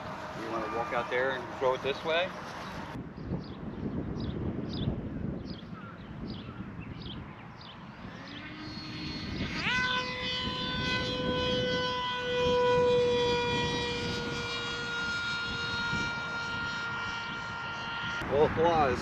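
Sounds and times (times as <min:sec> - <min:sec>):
electric motor propeller whine: 0:00.0 - 0:03.0, 0:07.2 - 0:19.0.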